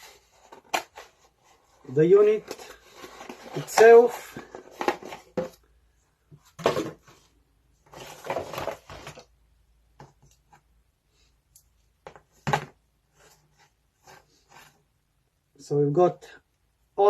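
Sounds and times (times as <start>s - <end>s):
plastic case clattering: 2.4s - 5.6s, 6.5s - 7.2s, 7.9s - 9.3s.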